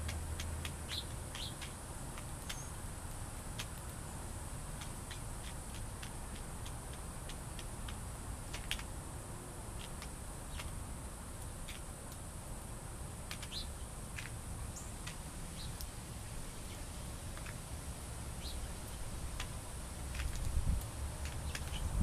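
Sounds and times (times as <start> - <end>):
steady high hiss: 0.0 - 22.0
birds chirping: 0.7 - 1.7, 2.4 - 2.8, 9.8 - 10.8, 13.3 - 14.0, 14.6 - 17.6, 18.3 - 19.1, 21.2 - 22.0.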